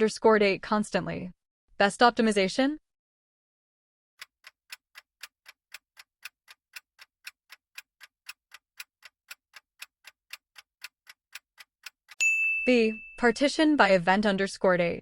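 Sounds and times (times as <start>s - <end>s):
clock ticking: 4.2s - 12.2s.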